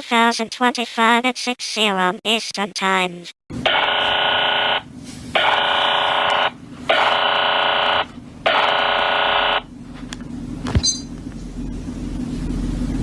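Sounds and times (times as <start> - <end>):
harsh buzzing electronic bursts: 3.6 - 9.7.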